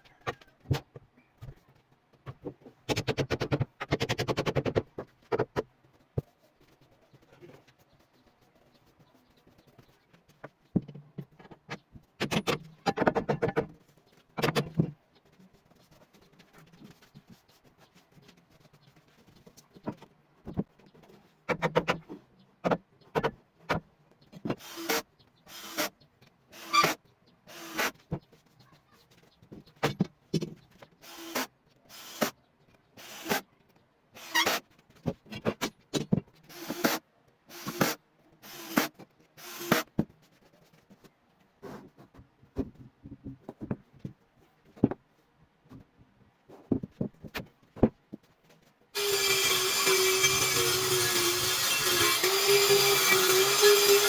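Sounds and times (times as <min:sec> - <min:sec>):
workshop knocks and clatter: 0:41.8 - 0:45.1, 0:45.7 - 0:48.3.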